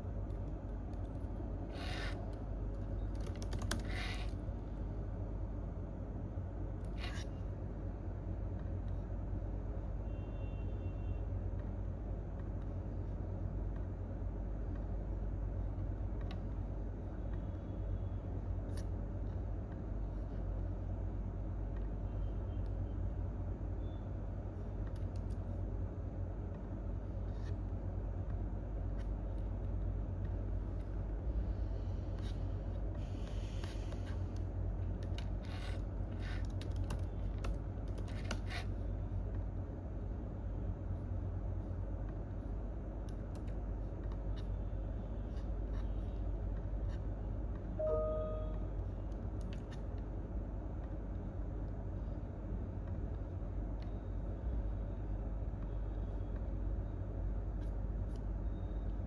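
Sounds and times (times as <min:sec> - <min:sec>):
steady low hum: 0:00.0 - 0:59.0
computer keyboard clicks: 0:03.0 - 0:04.3, 0:36.2 - 0:38.6.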